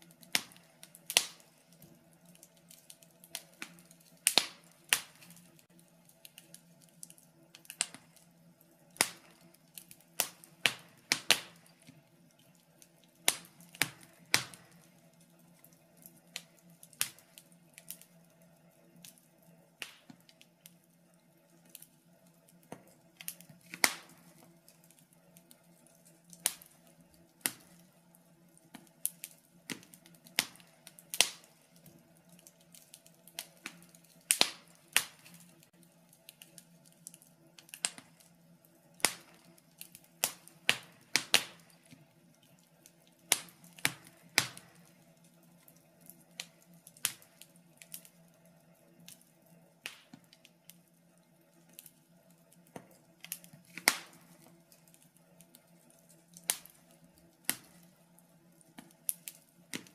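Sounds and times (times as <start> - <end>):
wood fire crackling and popping: 0.0 - 59.9.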